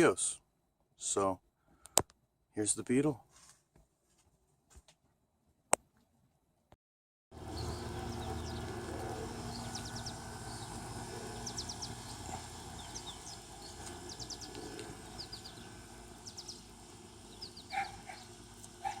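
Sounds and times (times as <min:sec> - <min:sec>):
low steady background rumble: 0:07.4 - 0:19.0
small birds chirping: 0:07.4 - 0:19.0.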